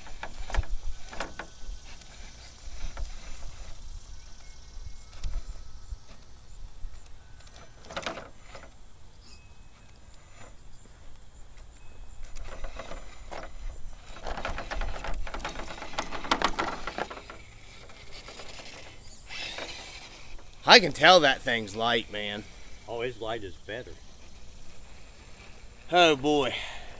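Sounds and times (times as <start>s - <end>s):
drivetrain whine: 0.0s - 26.9s
tires scraping and knocking on rocks: 12.5s - 22.7s.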